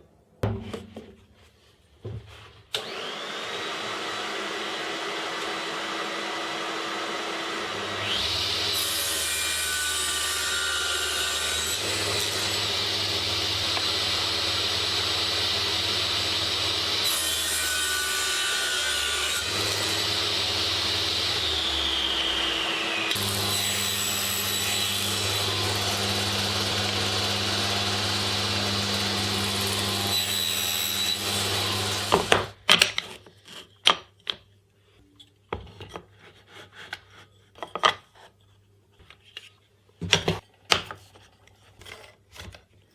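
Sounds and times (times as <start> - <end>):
power tool cutting wood: 2.7 - 32.6.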